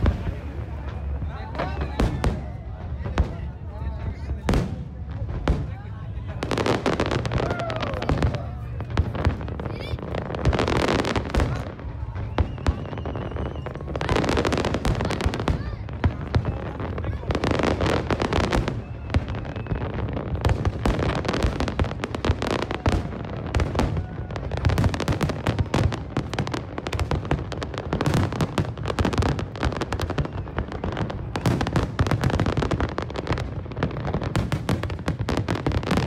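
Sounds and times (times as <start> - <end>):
fireworks bangs and crackles: 0.0 - 36.0.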